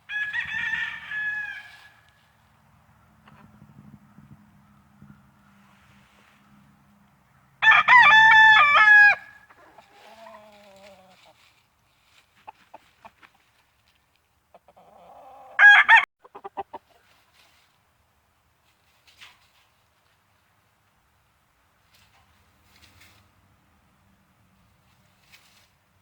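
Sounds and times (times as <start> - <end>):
rooster crowing: 0.1 - 2.1, 7.6 - 9.5, 15.4 - 16.1
chicken clucking: 9.5 - 11.5, 12.1 - 13.7, 14.4 - 15.6, 16.2 - 17.5.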